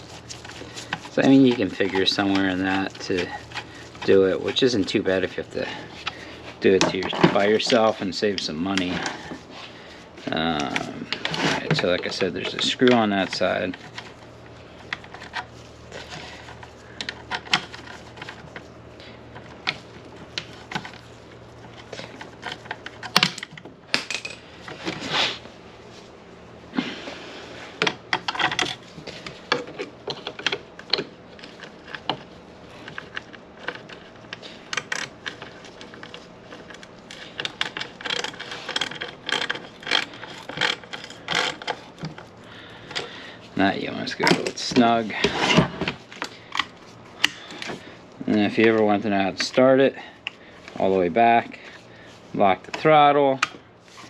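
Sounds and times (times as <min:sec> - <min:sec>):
hand tools and screws clattering: 0:00.0 - 0:09.6, 0:10.2 - 0:14.2, 0:21.6 - 0:25.1, 0:27.7 - 0:51.8.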